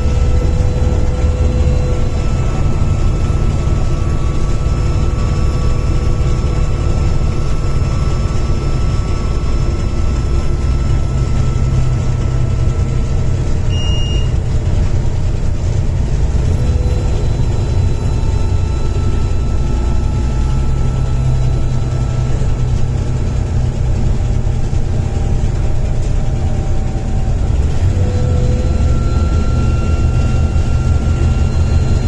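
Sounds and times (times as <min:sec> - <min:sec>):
bus diesel engine drone: 0:00.0 - 0:32.0
turbo whine: 0:00.0 - 0:32.0
short high beep: 0:13.7 - 0:14.4.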